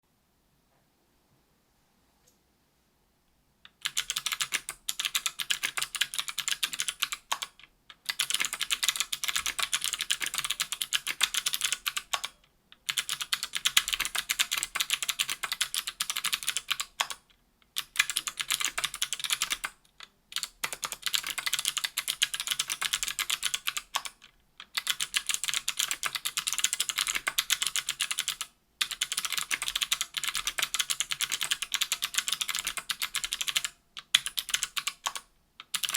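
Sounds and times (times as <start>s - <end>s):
clicky keyboard typing: 3.6s - 35.9s.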